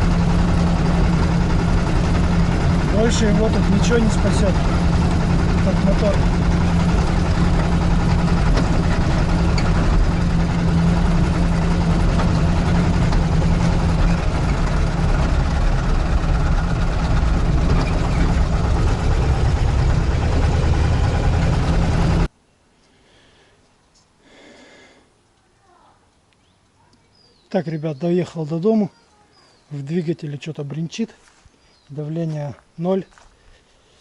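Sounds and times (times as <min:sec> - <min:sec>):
knocking engine running: 0:00.0 - 0:22.3.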